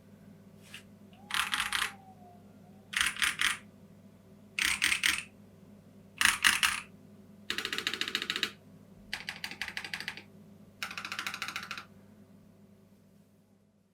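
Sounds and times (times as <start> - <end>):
mechanical keyboard typing: 1.3 - 2.0, 2.9 - 3.6, 4.6 - 5.3, 6.2 - 6.9, 7.5 - 11.9.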